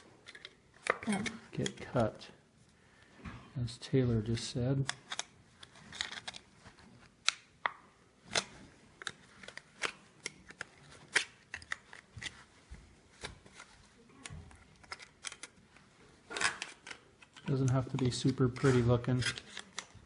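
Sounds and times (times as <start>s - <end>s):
metallic clicks and crinkles: 4.8s - 7.4s, 13.2s - 20.0s.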